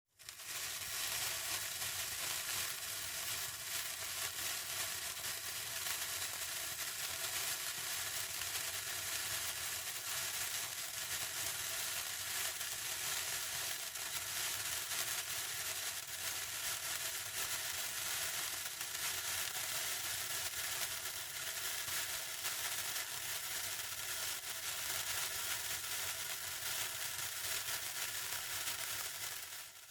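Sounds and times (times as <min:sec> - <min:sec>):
burning fuse sizzling and crackling: 0:00.1 - 0:29.9.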